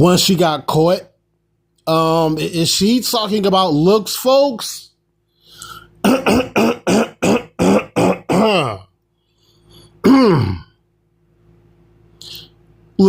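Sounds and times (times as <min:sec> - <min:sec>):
man clearing his throat: 0:06.0 - 0:08.9, 0:10.0 - 0:10.8
man coughing: 0:06.0 - 0:08.9, 0:10.0 - 0:10.8.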